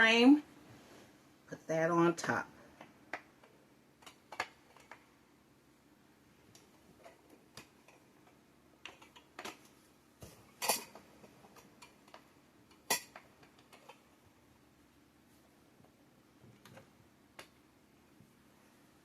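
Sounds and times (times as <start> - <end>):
shelf frames clicking and clattering: 10.4 - 14.1.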